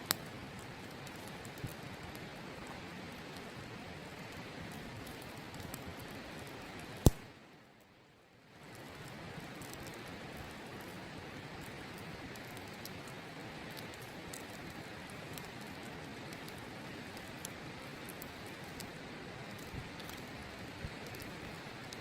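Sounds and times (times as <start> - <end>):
campfire crackling and popping: 0.0 - 22.0.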